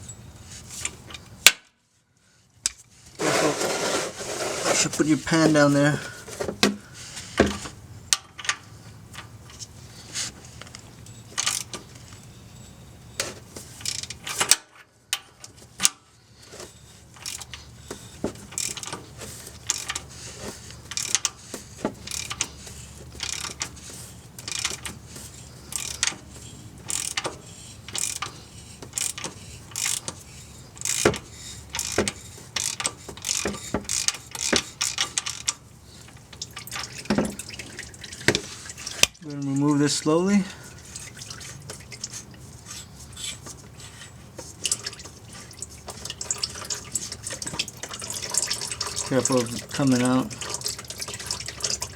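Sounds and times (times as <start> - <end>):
ratchet clicking: 17.2 - 19.0, 19.6 - 20.1, 20.9 - 22.5, 23.2 - 23.8, 24.4 - 35.6.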